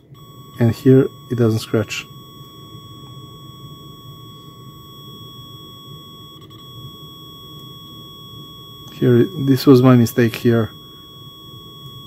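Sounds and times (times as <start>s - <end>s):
multimeter continuity beep tone: 0.0s - 12.0s.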